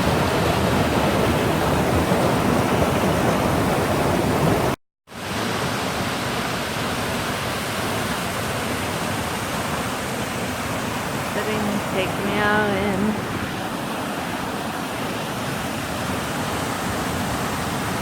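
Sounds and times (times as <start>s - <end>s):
waterfall rushing: 0.0s - 18.0s.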